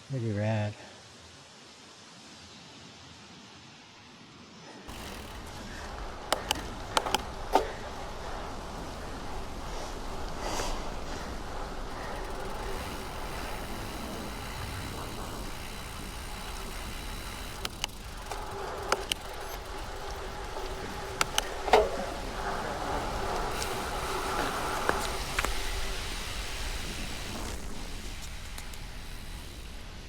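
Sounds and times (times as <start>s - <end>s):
bicycle tyre and wind noise: 1.5s - 30.0s
bike clicks and knocks: 4.9s - 26.0s.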